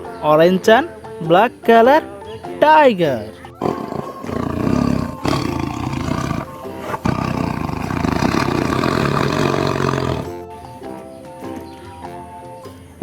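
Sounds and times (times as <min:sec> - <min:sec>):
light background music: 0:00.0 - 0:13.0
tiger roaring: 0:03.6 - 0:10.3.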